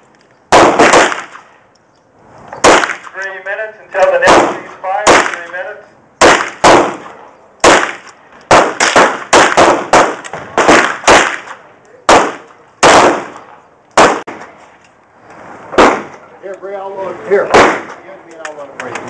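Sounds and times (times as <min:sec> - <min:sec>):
gunshots: 0:00.5 - 0:01.5, 0:02.6 - 0:03.4, 0:04.0 - 0:14.6, 0:15.7 - 0:16.2, 0:17.4 - 0:18.0.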